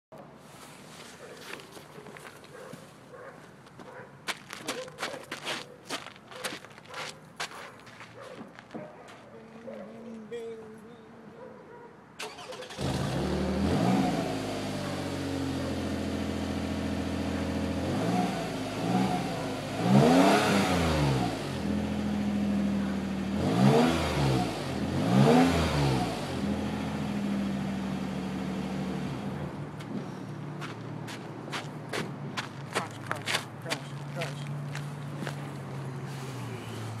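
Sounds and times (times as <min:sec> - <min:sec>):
car engine starting: 0:12.2 - 0:30.8
car engine idling and revving: 0:12.2 - 0:37.0.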